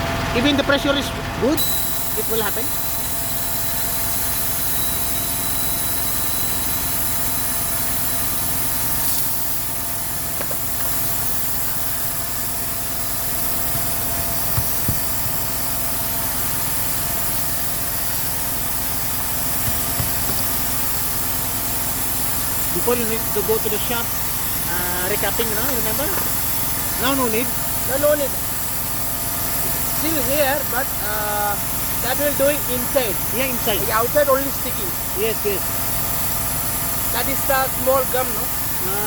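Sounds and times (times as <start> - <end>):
motor running: 0.0 - 39.0.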